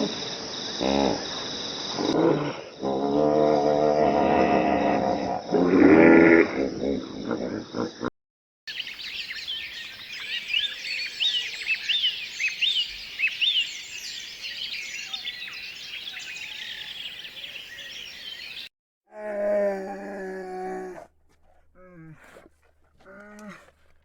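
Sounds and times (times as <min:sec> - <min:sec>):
small birds chirping: 0:08.7 - 0:18.7
low animal call: 0:19.1 - 0:24.0.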